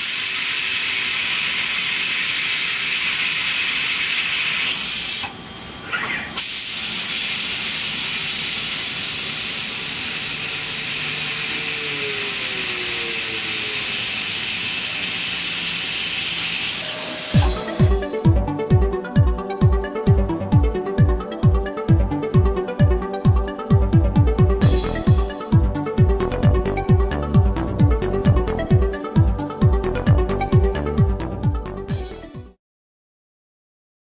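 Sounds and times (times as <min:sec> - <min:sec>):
coolant spraying hiss: 0:00.0 - 0:18.2
short rising machine whine: 0:10.0 - 0:18.6.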